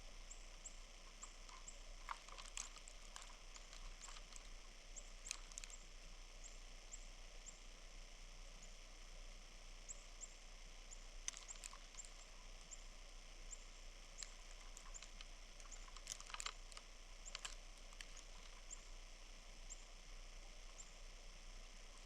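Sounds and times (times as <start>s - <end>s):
steady hiss: 0.0s - 22.0s
small birds chirping: 0.1s - 7.6s, 9.9s - 21.1s
sharp clicks: 1.5s - 4.6s, 5.2s - 5.8s, 14.2s - 18.9s.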